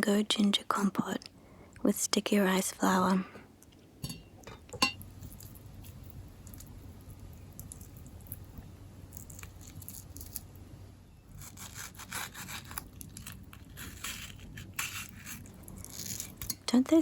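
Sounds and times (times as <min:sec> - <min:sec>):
hand scraping food: 0:11.3 - 0:16.5.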